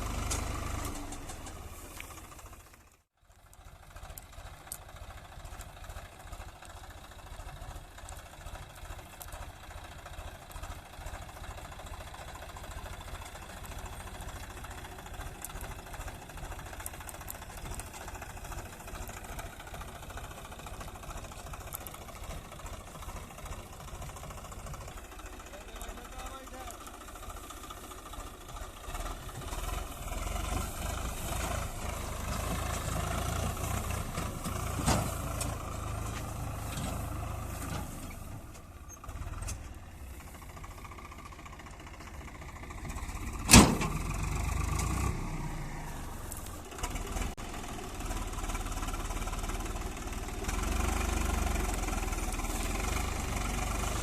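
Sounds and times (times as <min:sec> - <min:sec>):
diesel engines running: 0:00.0 - 0:54.0.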